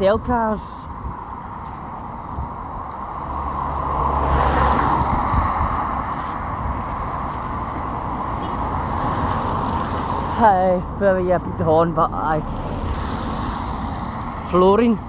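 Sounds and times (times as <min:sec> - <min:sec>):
steady traffic noise: 0:00.0 - 0:15.0
car passing by: 0:01.1 - 0:10.8, 0:12.3 - 0:15.0.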